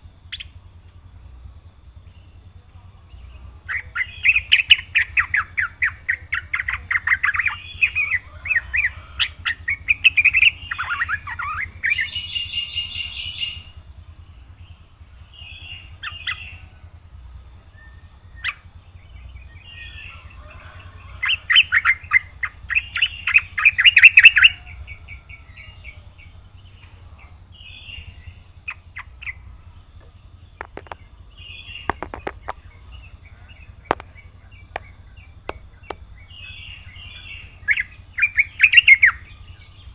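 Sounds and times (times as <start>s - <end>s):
bird chirping: 0.0s - 39.9s
sharp clicks: 30.0s - 31.1s, 31.9s - 32.7s, 33.9s - 36.0s.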